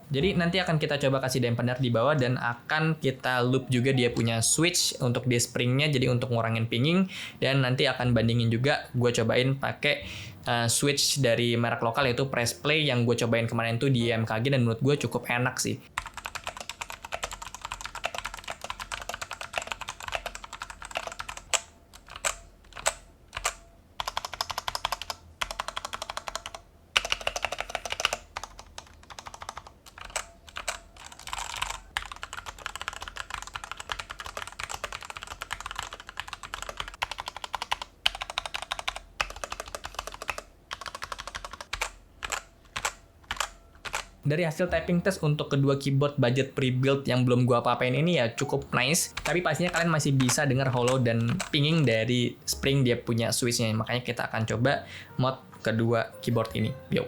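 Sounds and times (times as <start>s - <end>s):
mechanical keyboard typing: 15.9s - 44.2s, 48.9s - 52.0s.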